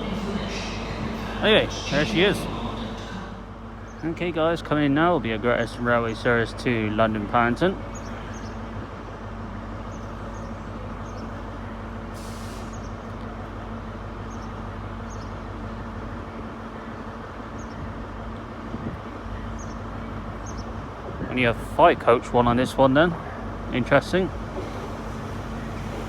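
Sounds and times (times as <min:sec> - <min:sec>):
train engine drone: 0:00.0 - 0:26.0
air hiss: 0:12.2 - 0:12.8.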